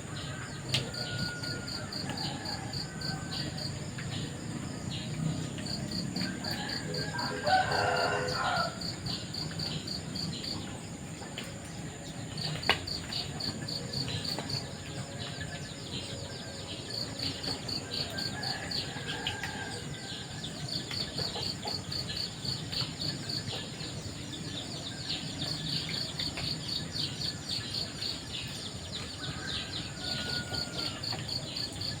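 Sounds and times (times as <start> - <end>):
insects chirping: 0.1 - 32.0
rooster crowing: 0.2 - 3.7, 6.2 - 9.0, 17.7 - 20.3, 29.2 - 31.8.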